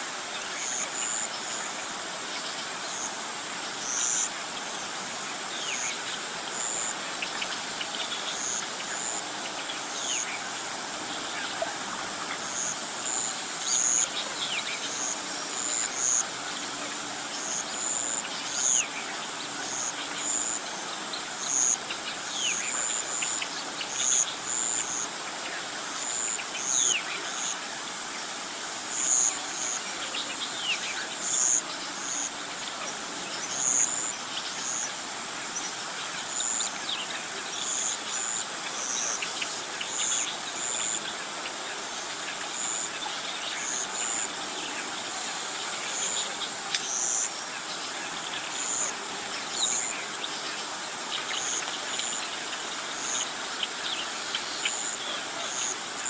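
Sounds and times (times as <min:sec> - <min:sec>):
steady high hiss: 0:00.0 - 0:56.0.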